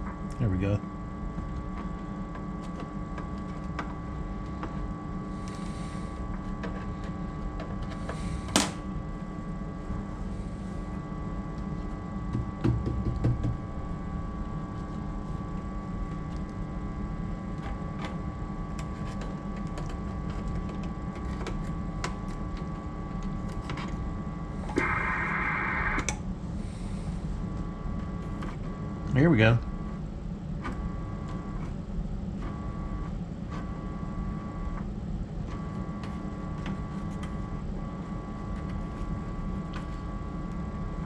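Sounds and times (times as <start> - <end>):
electrical hum with tones: 0.0 - 41.0
loud raspy buzz: 24.6 - 26.1.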